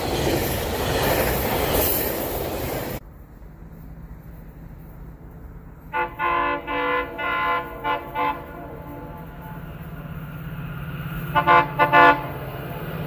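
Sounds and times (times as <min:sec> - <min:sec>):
train air horn blasts: 0:05.9 - 0:10.0, 0:11.2 - 0:12.7.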